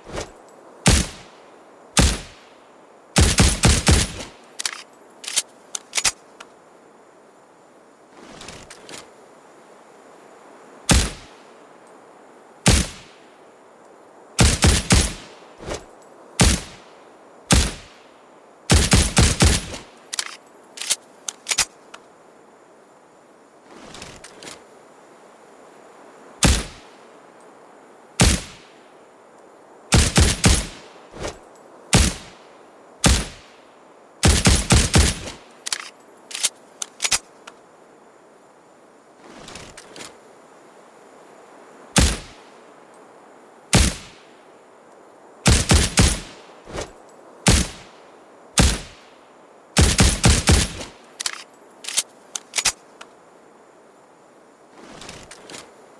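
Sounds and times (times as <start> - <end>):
suppressed pistol shots: 2.0 - 2.4, 32.0 - 32.3, 42.0 - 42.4, 43.8 - 44.2, 47.5 - 47.9, 48.6 - 49.0
faint clicks: 4.2 - 6.6, 19.5 - 22.1, 35.2 - 37.6, 50.8 - 53.2.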